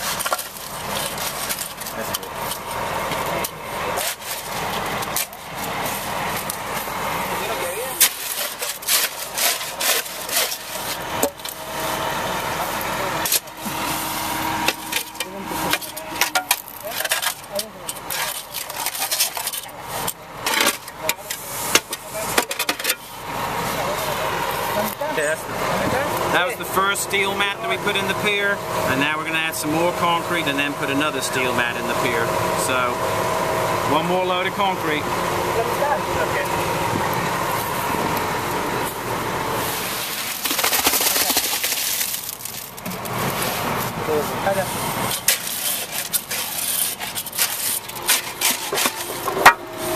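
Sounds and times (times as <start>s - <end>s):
wet concrete sliding and scraping: 0.0s - 7.0s, 7.6s - 23.1s, 38.8s - 49.9s
steady mechanical noise: 0.0s - 49.9s.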